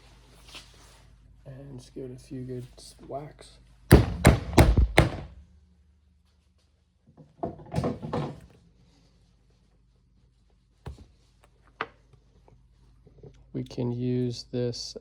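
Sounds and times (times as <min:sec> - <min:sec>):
hole punch strikes: 0:03.9 - 0:05.4.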